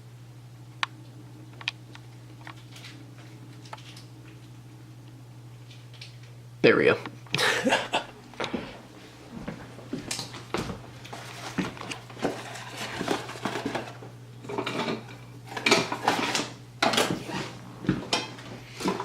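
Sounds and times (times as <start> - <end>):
steady low hum: 0.0 - 19.0
dishes clattering: 12.2 - 17.2.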